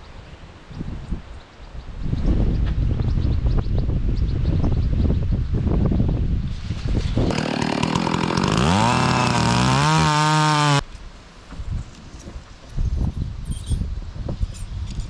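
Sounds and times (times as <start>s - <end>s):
wind noise on microphone: 0.0s - 7.4s, 11.5s - 15.0s
chainsaw revving: 7.3s - 10.8s.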